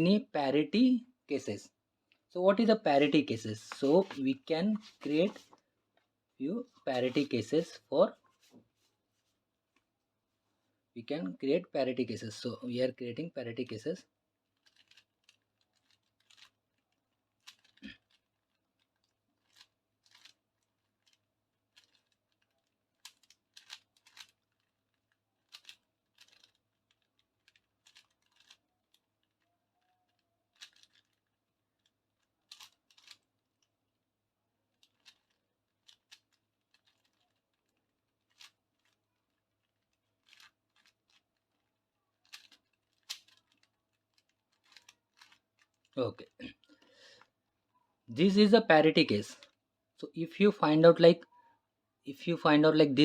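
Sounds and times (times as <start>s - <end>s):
puzzle cube layers clicking: 23.0s - 24.7s.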